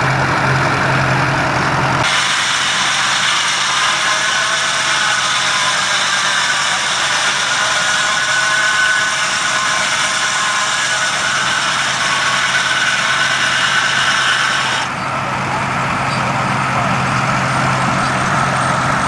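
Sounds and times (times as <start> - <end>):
engine running with faint whine: 0.0 - 2.1, 14.9 - 19.0.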